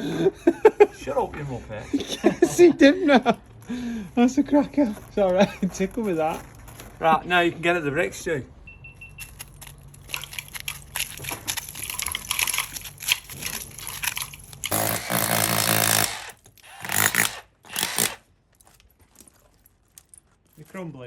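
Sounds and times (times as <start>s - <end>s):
tools scraping and knocking brick: 9.3s - 20.7s
power tool running: 14.7s - 18.2s.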